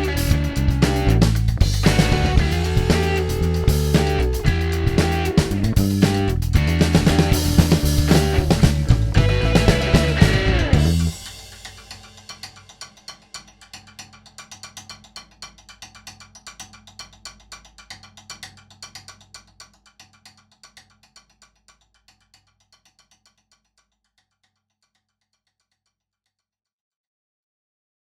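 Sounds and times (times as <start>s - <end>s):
percussive ticking: 0.0s - 23.8s.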